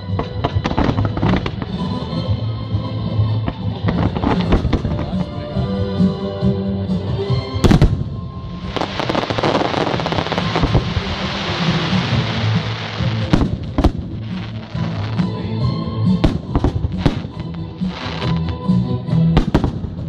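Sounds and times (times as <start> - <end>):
fireworks bangs: 0.0 - 1.8, 3.5 - 5.3, 7.6 - 15.3, 16.2 - 18.5, 19.4 - 20.0
fireworks crackling: 0.0 - 2.0, 3.4 - 5.4, 7.6 - 15.5, 16.1 - 18.6, 19.4 - 20.0
music: 0.0 - 20.0.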